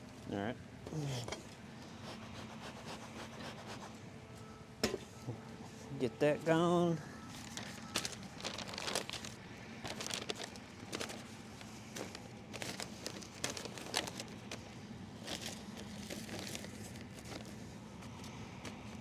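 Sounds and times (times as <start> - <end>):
crinkling and rustling handling: 5.1 - 19.0.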